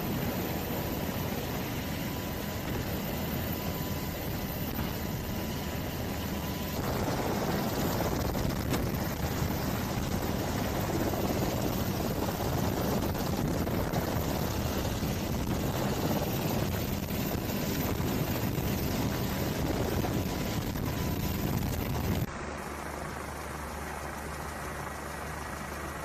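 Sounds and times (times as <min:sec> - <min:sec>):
engine hum: 0:00.0 - 0:26.0
helicopter rotor chopping: 0:00.0 - 0:26.0.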